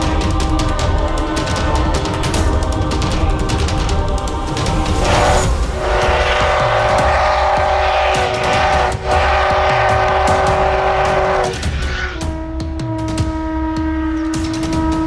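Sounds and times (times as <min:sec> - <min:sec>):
steam locomotive whistle blast: 0:05.8 - 0:15.0.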